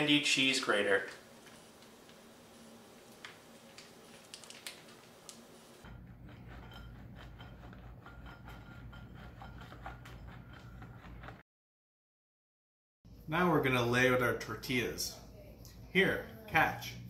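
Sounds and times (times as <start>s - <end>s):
cheese grater scraping: 5.9s - 11.4s.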